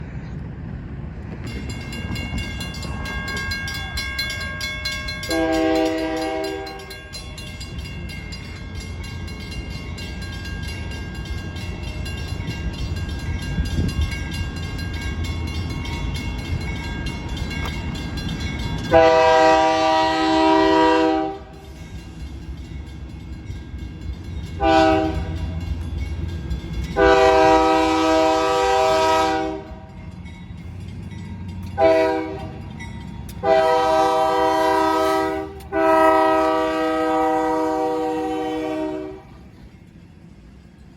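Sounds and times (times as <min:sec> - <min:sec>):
passing train rumble: 0:00.0 - 0:40.9
locomotive air horn blasts: 0:05.2 - 0:07.0, 0:18.9 - 0:21.6, 0:24.6 - 0:25.5, 0:27.0 - 0:29.9, 0:31.8 - 0:32.6, 0:33.4 - 0:39.4.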